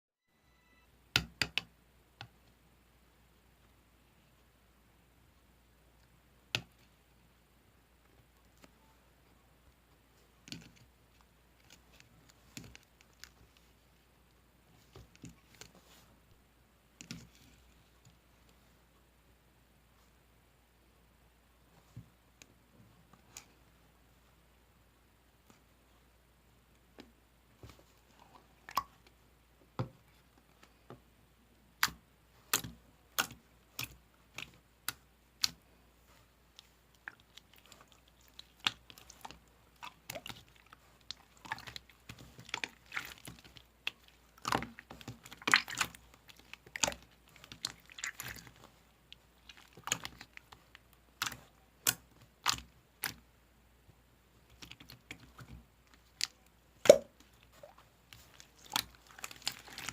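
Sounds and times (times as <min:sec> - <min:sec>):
slime clicking and popping: 0:56.1 - 0:57.2.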